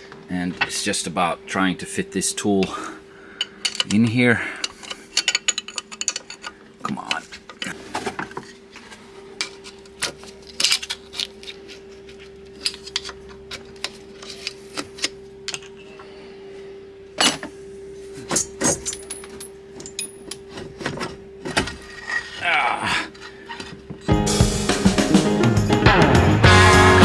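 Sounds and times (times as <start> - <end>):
faint steady hum: 0.0 - 24.1
metal tool clinking against engine: 3.4 - 6.6, 18.4 - 20.5.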